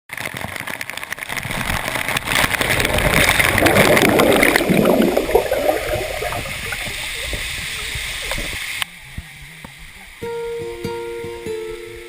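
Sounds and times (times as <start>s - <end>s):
waterfall rushing water: 2.2s - 8.8s.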